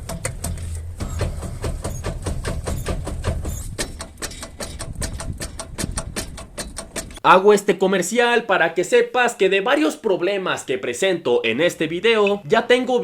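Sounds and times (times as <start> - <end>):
low hum: 0.0 - 6.2
metal on metal knocking: 0.0 - 7.2.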